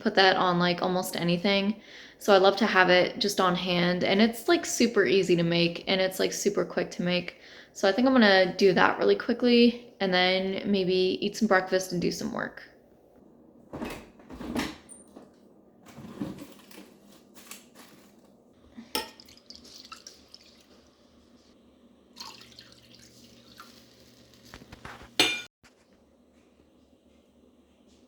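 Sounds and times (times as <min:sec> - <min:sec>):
dishes and utensils clinking: 0:18.8 - 0:19.4, 0:25.2 - 0:25.5
water dripping and splashing: 0:18.9 - 0:21.4, 0:22.2 - 0:24.5.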